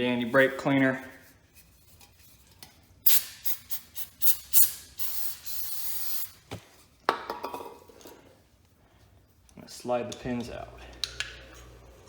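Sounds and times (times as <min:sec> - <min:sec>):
aerosol spray hissing: 0:03.1 - 0:06.4.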